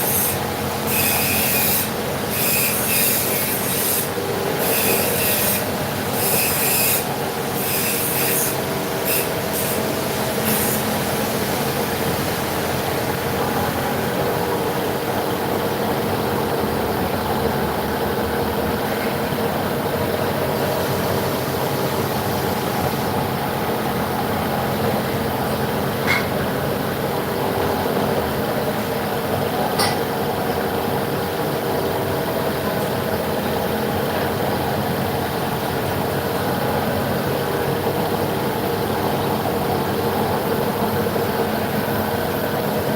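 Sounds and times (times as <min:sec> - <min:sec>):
high-pitched metal cutting screech: 0:00.0 - 0:09.8, 0:10.4 - 0:10.9
machine hum with constant tones: 0:00.0 - 0:42.9.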